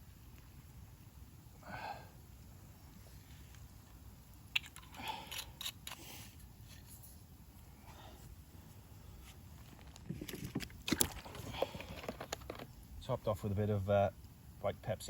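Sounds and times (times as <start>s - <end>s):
soft rustle: 5.3s - 12.6s.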